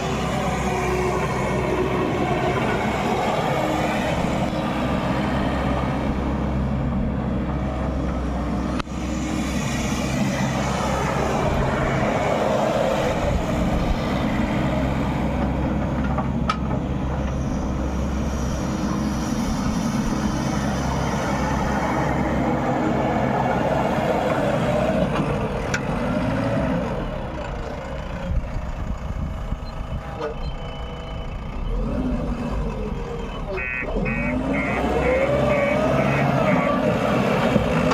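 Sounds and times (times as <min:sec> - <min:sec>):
diesel backhoe engine running: 0:00.0 - 0:37.9.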